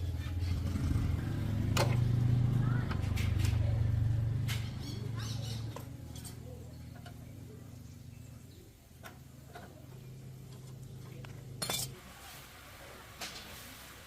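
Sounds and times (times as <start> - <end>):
low steady hum: 0.0 - 14.0
metal clatter: 10.4 - 12.0.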